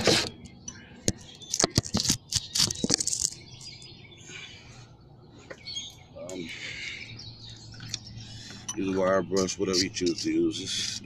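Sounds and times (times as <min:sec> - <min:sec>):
faint scratching: 0:08.1 - 0:11.0.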